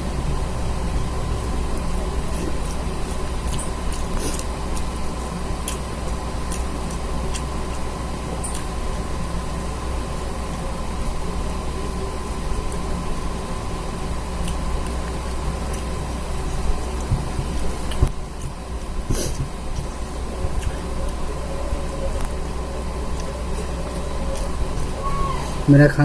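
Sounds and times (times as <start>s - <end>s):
steady low hum: 0.0s - 26.0s
person eating with mouth clicks: 1.7s - 8.8s, 14.4s - 25.0s.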